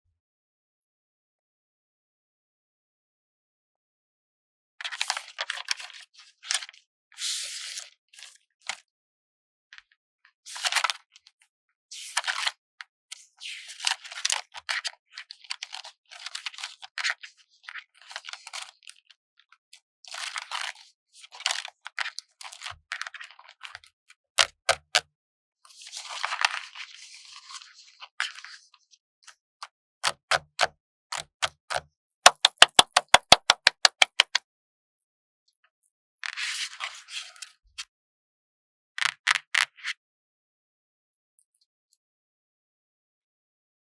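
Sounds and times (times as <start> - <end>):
sharp clicks: 30.0 - 34.4.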